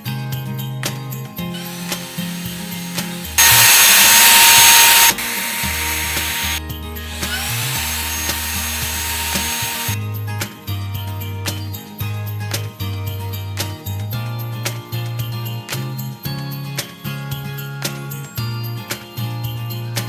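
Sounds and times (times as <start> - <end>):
background music with bass line: 0.0 - 20.0
handheld vacuum cleaner whine: 1.5 - 10.0.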